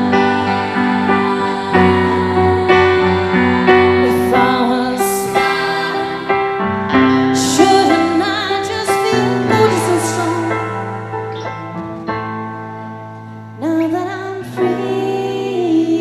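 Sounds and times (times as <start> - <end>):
wordless vocal line: 0.0 - 6.4
piano chords: 0.0 - 16.0.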